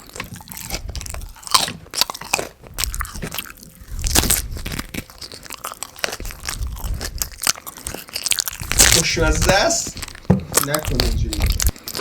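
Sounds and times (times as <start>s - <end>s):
person chewing crunchy food: 0.0s - 12.0s
mouth noises: 5.8s - 12.0s.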